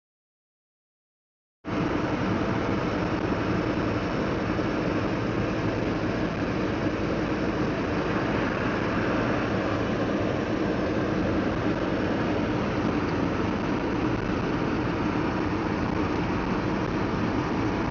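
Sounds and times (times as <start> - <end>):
car road and engine noise: 1.6 - 17.9.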